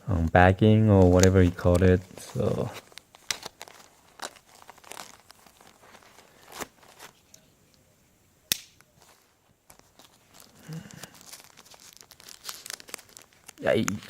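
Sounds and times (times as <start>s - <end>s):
plastic bag crinkling: 0.8s - 7.3s, 9.0s - 14.0s.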